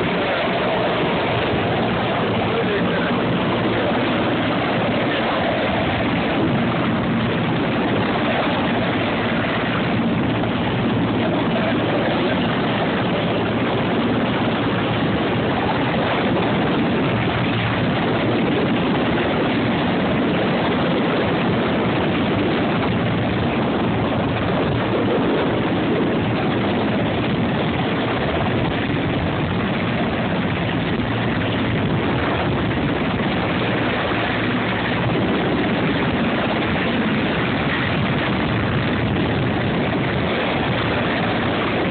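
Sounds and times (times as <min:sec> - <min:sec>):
helicopter engine and rotor: 0:00.0 - 0:41.9.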